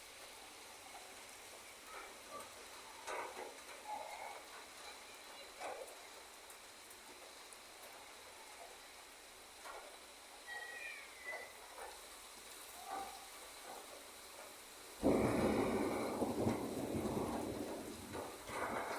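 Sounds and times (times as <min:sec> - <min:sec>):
rain falling: 0:00.0 - 0:18.9
thunder crack and rumble: 0:15.0 - 0:18.9.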